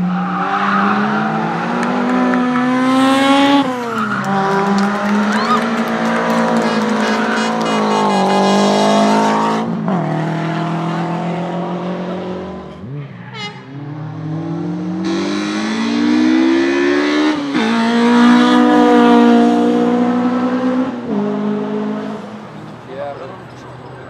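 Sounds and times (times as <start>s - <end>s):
car engine accelerating hard: 0.0s - 24.0s.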